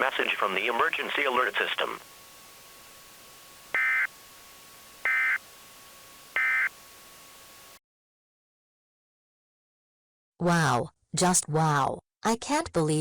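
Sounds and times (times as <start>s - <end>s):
screeching data tone bursts: 3.7s - 7.0s.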